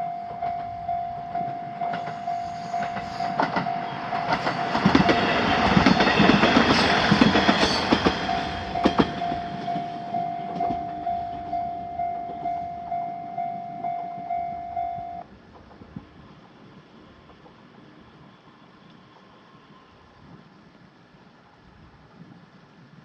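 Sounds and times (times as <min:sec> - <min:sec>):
level-crossing warning bell dinging: 0:00.0 - 0:15.3
train wheels clattering over rail joints: 0:01.4 - 0:11.0.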